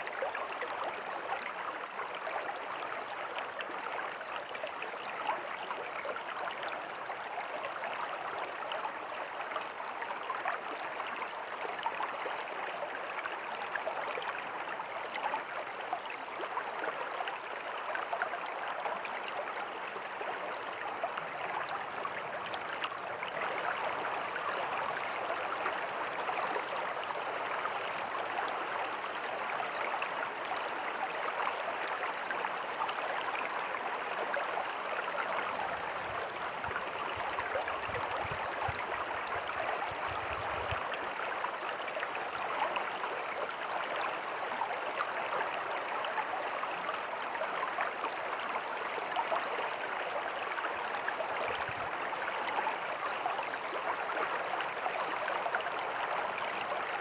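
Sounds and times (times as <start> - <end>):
creek flowing over rocks: 0.0 - 57.0.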